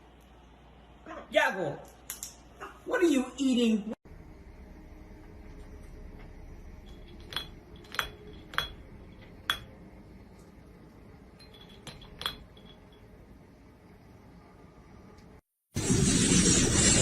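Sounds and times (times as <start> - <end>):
hard object tapping glass: 7.0 - 9.8, 11.4 - 13.0.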